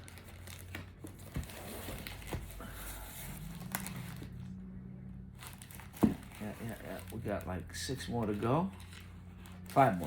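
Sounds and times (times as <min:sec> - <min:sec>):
packaging crinkling and rustling: 0:00.0 - 0:04.5, 0:05.3 - 0:10.0.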